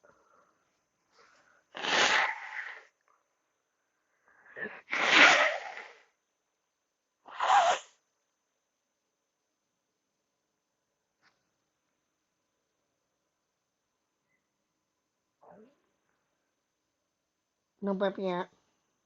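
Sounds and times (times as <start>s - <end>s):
woman sneezing: 4.6s - 6.0s.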